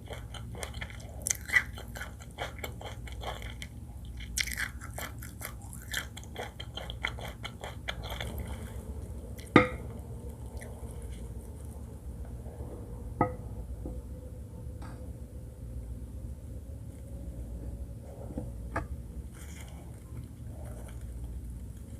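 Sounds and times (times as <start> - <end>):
close-up chewing: 0.0 - 12.0, 19.3 - 21.9.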